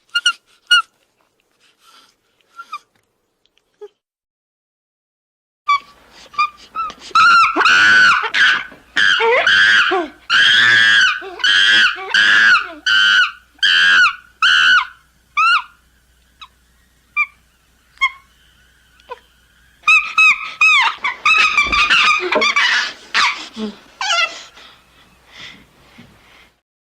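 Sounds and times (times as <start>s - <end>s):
chimpanzee screaming: 5.7s - 15.8s, 17.2s - 24.6s.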